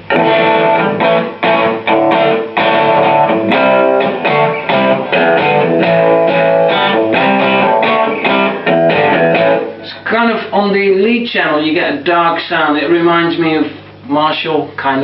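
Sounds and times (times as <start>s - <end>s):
distorted electric guitar chords: 0.0s - 10.6s.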